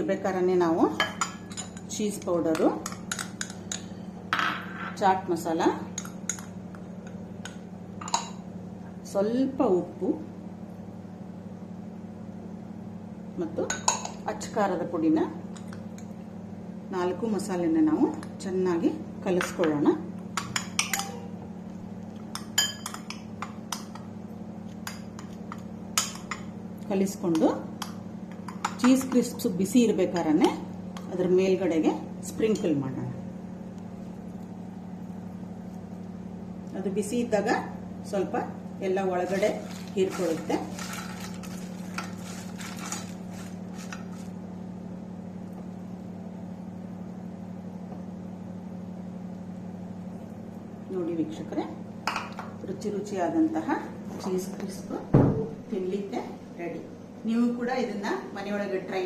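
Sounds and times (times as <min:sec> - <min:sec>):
steady low hum: 0:00.0 - 0:59.0
spoon clinking against bowl: 0:20.4 - 0:21.2, 0:22.3 - 0:24.1
utensils scraping and clinking: 0:39.2 - 0:44.3.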